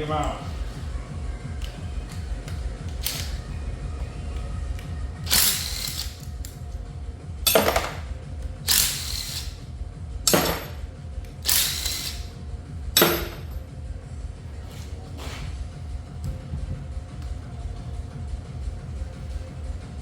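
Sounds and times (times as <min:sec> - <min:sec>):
power tool removing bolts: 0:02.9 - 0:03.4, 0:05.2 - 0:06.6, 0:07.5 - 0:09.6, 0:10.3 - 0:12.3, 0:13.0 - 0:13.5.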